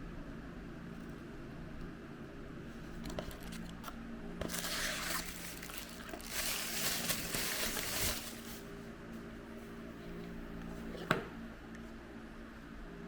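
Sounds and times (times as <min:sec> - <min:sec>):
plastic wrapper crinkling: 0:04.4 - 0:08.7.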